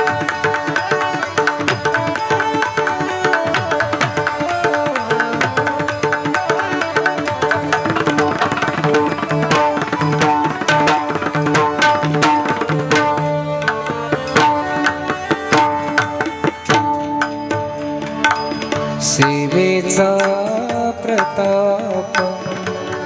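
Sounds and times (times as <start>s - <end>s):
fast hand drumming: 0.0s - 16.9s
held melodic notes: 0.0s - 17.0s.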